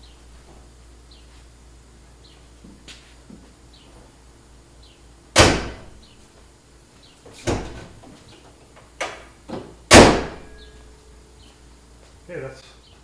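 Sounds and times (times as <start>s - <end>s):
sharp bangs and knocks: 5.4s - 6.0s, 9.9s - 10.6s.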